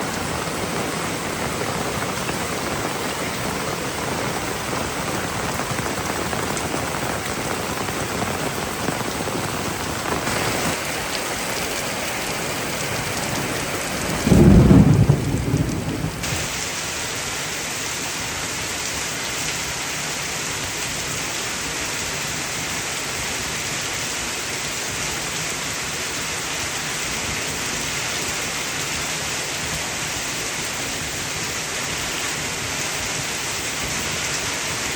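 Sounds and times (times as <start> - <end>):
thunderclap rumbling: 0.0 - 16.7
heavy rain pouring: 0.0 - 34.9.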